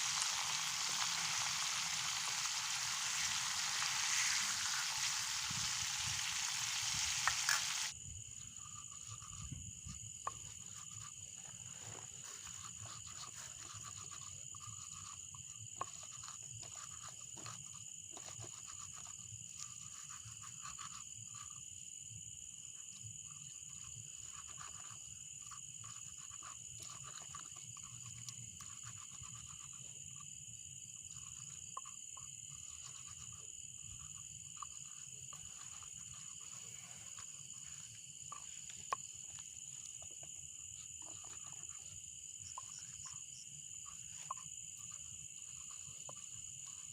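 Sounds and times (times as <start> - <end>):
loud hiss: 0.0 - 7.9
high-pitched insect chorus: 0.0 - 46.9.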